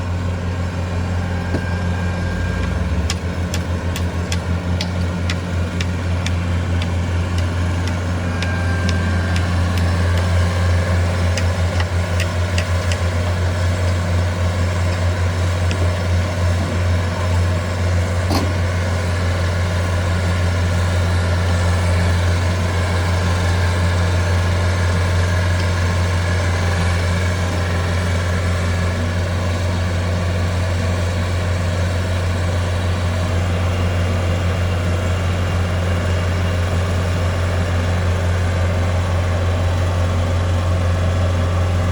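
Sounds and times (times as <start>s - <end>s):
heavy engine humming: 0.0s - 41.9s.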